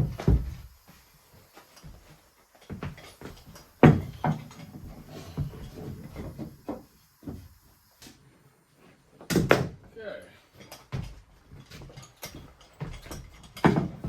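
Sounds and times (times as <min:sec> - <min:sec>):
wooden boards knocking: 0:03.8 - 0:04.5.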